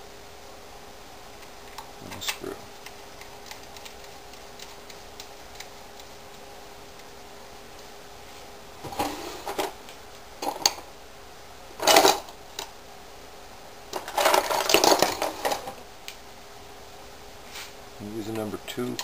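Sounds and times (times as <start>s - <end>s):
small metal parts clinking: 11.8s - 12.3s, 14.0s - 15.8s.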